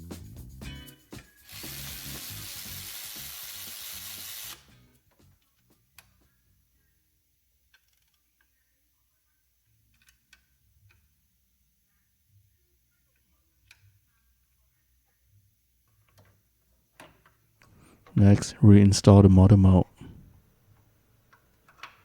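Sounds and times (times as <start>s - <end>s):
background music: 0.0s - 6.6s
loud steady hiss: 1.2s - 4.9s.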